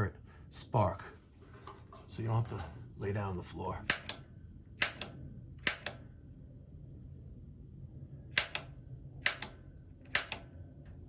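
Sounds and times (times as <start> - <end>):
igniter button snapping and clicking: 3.9 - 4.2, 4.8 - 6.0, 8.4 - 10.5.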